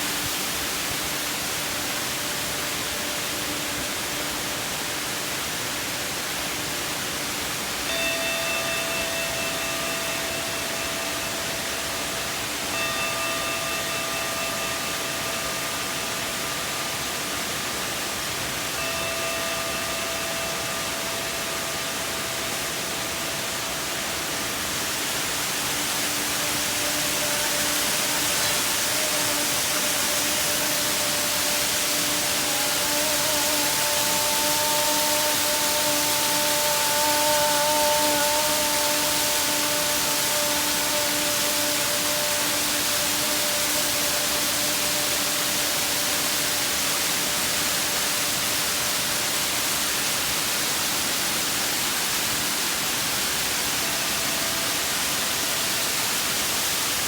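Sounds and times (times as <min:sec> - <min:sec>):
waterfall rushing: 0:00.0 - 0:57.0
low held tone: 0:07.6 - 0:50.1
singing bowl struck ringing: 0:07.8 - 0:49.2.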